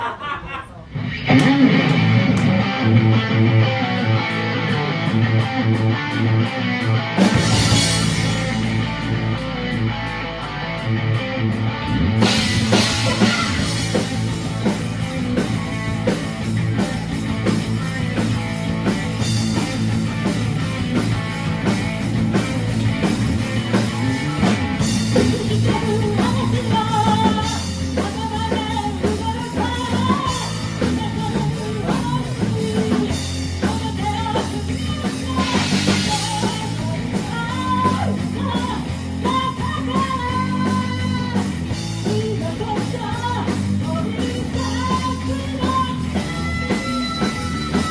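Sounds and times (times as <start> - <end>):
rock band playing: 0.8 - 47.9
person singing: 12.7 - 14.0, 25.2 - 47.9.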